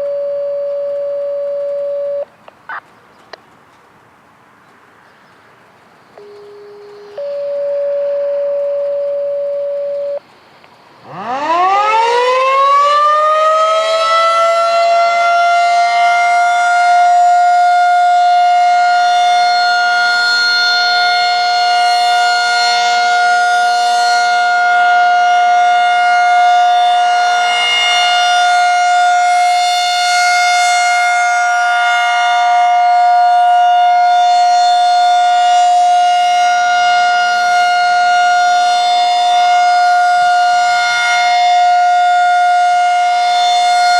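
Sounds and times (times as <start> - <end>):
rotating warning siren wailing: 11.0 - 43.9.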